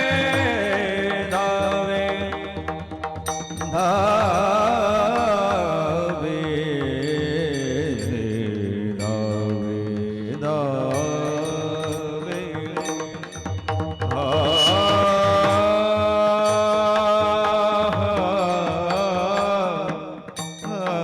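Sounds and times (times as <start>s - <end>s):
man singing: 0.0s - 21.0s
steady held tones: 0.0s - 21.0s
drum strokes: 10.4s - 21.0s.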